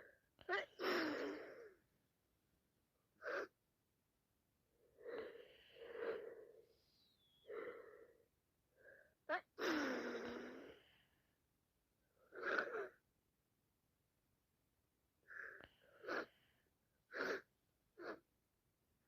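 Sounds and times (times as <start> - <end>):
gasping in-breaths: 4.9 - 8.2.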